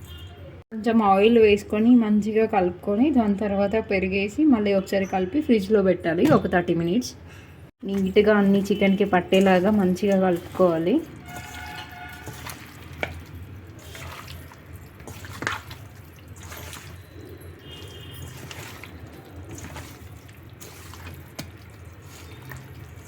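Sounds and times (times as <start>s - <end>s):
hands squelching meat in marinade: 7.9s - 23.0s.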